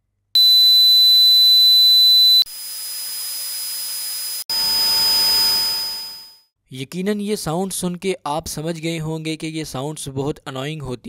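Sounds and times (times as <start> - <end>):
high-pitched ringing tone: 0.4 - 6.5.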